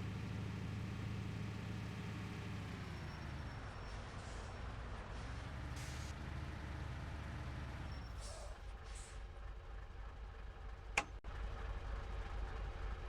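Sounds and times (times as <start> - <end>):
truck engine rumble: 0.0 - 13.0.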